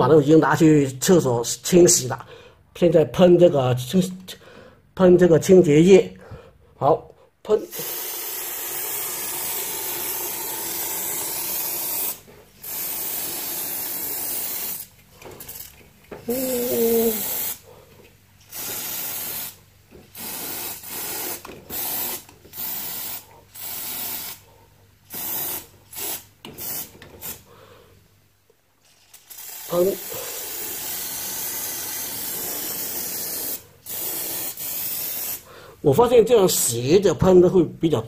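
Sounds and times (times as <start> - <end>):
aerosol can spraying: 7.7 - 17.7, 18.4 - 24.4, 25.1 - 27.4, 28.8 - 35.5.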